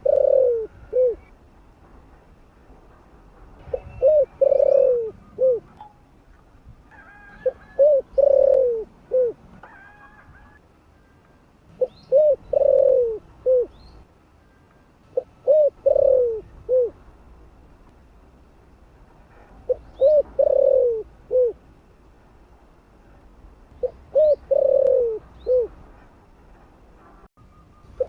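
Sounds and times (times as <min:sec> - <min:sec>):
dove cooing: 0:00.0 - 0:01.3, 0:03.7 - 0:05.8, 0:06.9 - 0:10.6, 0:11.7 - 0:13.8, 0:15.1 - 0:17.0, 0:19.6 - 0:21.6, 0:23.8 - 0:25.8.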